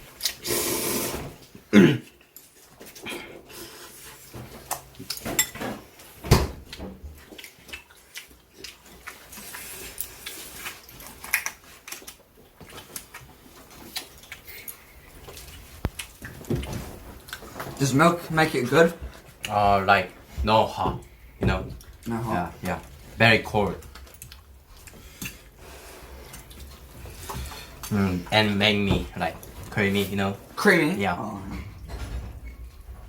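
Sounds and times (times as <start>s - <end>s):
dishes and cutlery clinking: 5.1s - 5.9s.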